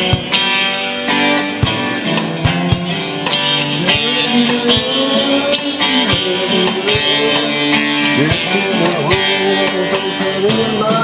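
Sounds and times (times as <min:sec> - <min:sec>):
instrumental guitar music: 0:00.0 - 0:11.0.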